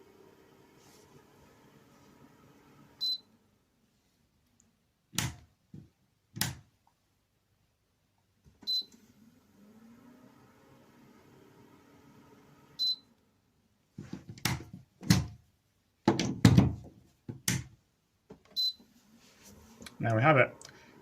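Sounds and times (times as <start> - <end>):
dehumidifier short high beep: 3.0 - 3.3, 12.8 - 13.1.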